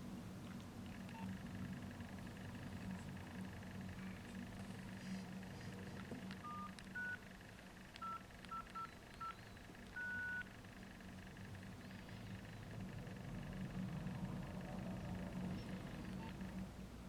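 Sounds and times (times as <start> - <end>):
low steady hum: 0.0 - 17.0
phone keypad beeps: 6.4 - 7.2, 8.0 - 10.5.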